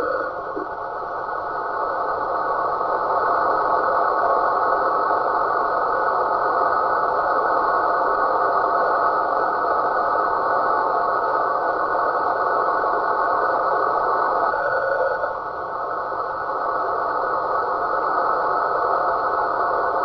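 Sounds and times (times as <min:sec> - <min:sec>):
muffled rushing radio drone: 0:00.0 - 0:05.2, 0:11.1 - 0:20.0.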